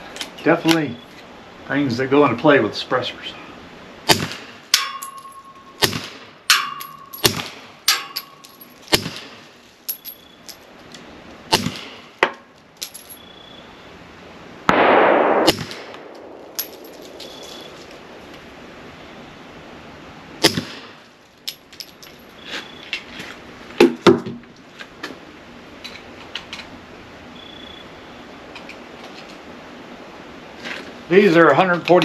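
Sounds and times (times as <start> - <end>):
pistol shots: 4.1 - 5.2, 5.8 - 8.2, 14.7 - 17.8
metallic ring of steel target: 4.1 - 10.6, 14.7 - 18.1
loud rush of noise: 14.3 - 20.4.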